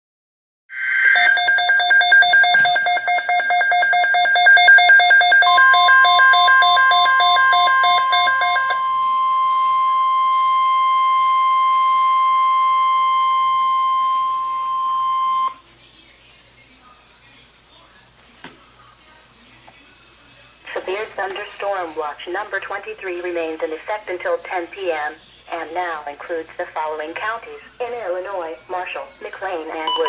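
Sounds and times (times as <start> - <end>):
steady attention tone: 0.7 - 15.6
rapid pulsing beep: 0.8 - 15.5.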